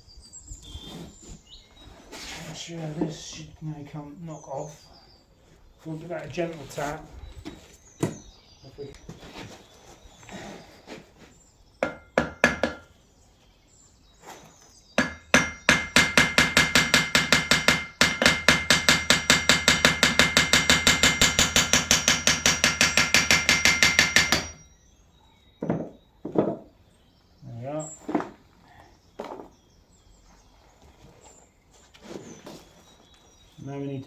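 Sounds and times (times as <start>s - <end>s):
hammer striking metal: 11.8s - 12.9s, 15.0s - 24.6s.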